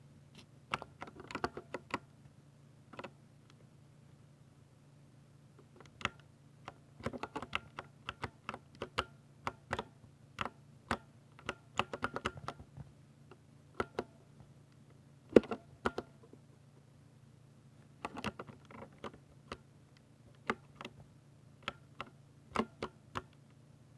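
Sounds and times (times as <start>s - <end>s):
mechanical keyboard typing: 0.7s - 2.0s, 5.9s - 12.8s, 18.0s - 19.6s, 21.6s - 23.4s.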